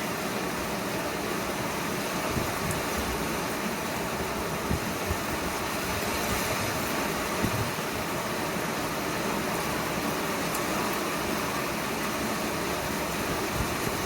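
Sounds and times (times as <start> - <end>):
heavy rain: 0.0 - 14.0
gusty wind rumbles: 2.2 - 8.2.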